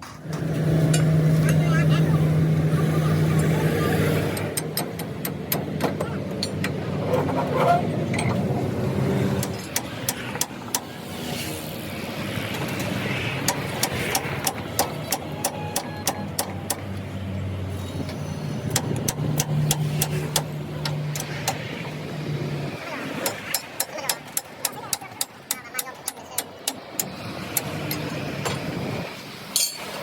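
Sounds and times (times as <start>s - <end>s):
engine running steadily: 0.0s - 30.0s
sharp clicks and knocks: 4.3s - 7.5s, 9.4s - 11.0s, 12.5s - 17.1s, 18.0s - 22.0s, 23.2s - 28.7s.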